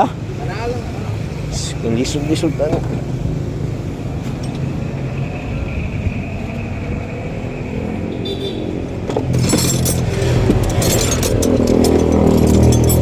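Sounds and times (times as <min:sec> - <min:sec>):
car engine idling: 0:00.0 - 0:08.1
handling noise: 0:09.0 - 0:13.0
metallic clinks: 0:09.2 - 0:13.0.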